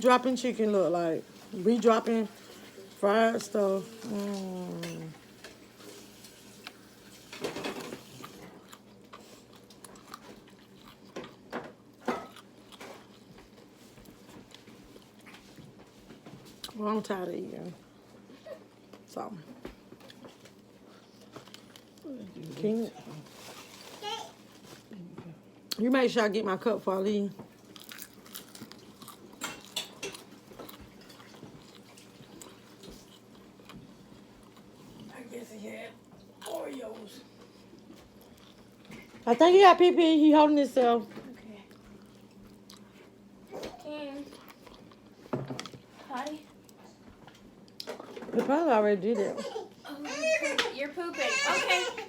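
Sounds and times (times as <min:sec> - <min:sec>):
chewing fried chicken: 0:02.3 - 0:16.8, 0:19.7 - 0:25.8, 0:27.4 - 0:35.4, 0:36.0 - 0:39.2, 0:41.4 - 0:48.2
person eating close to microphone: 0:07.8 - 0:11.4, 0:20.0 - 0:22.5, 0:27.5 - 0:35.1, 0:36.2 - 0:39.1, 0:41.7 - 0:48.1
crisp crunches: 0:23.2 - 0:24.8.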